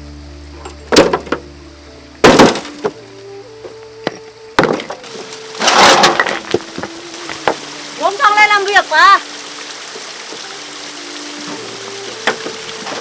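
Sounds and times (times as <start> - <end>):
faint background music: 0.0 - 13.0
wood cracking impacts: 0.9 - 1.5, 2.2 - 3.1, 3.7 - 7.7, 12.1 - 13.0
small knocks: 3.6 - 7.7, 11.5 - 13.0.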